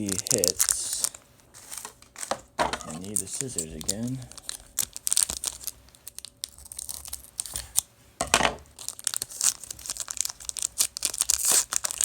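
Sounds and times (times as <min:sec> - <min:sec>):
scissors cutting foil: 0:00.0 - 0:01.2, 0:02.8 - 0:07.9, 0:08.7 - 0:12.0
foil crinkling and tearing: 0:00.0 - 0:07.9, 0:08.7 - 0:12.0.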